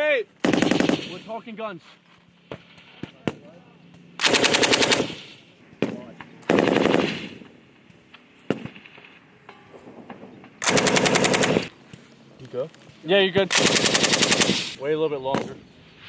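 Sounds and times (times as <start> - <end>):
machine gun bursts: 0.4 - 1.2, 4.2 - 5.3, 6.5 - 7.3, 10.6 - 11.7, 13.5 - 14.8
single sharp gunshots: 0.4 - 1.3.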